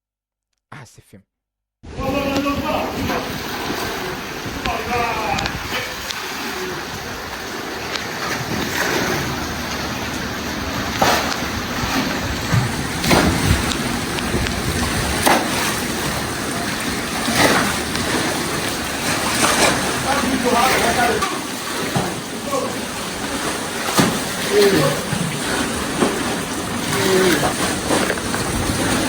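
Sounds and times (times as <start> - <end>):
wind on microphone: 1.8 - 7.4, 10.5 - 18.2, 27.0 - 29.0
floodwater rushing and sloshing: 1.8 - 29.0.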